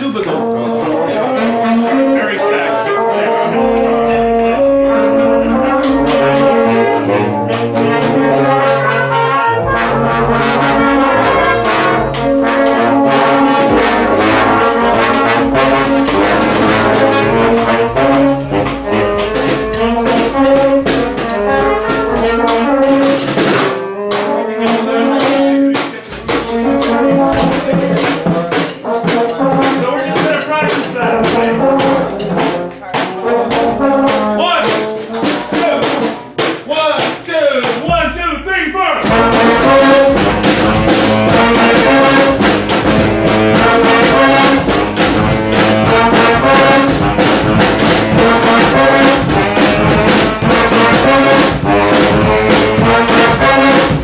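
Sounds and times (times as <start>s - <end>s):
brass band playing: 0.0s - 54.0s
percussion keeping time: 0.0s - 54.0s.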